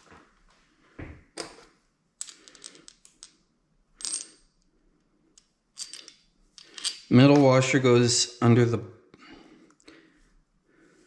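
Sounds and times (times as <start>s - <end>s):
small metal hardware clinking: 5.4s - 7.5s.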